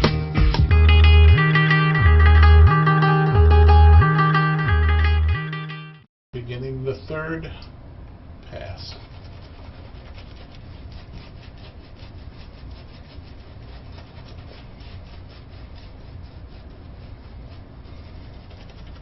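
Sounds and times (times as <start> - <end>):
steady low hum: 6.4 - 19.0.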